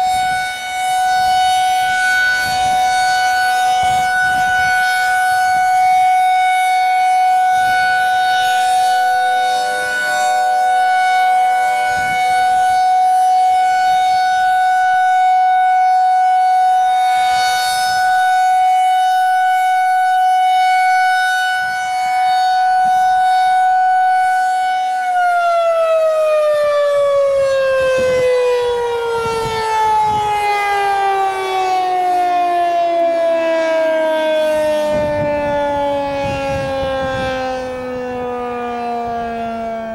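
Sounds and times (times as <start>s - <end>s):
civil defense siren steady tone: 0.0s - 39.9s
distant sirens: 0.0s - 39.9s.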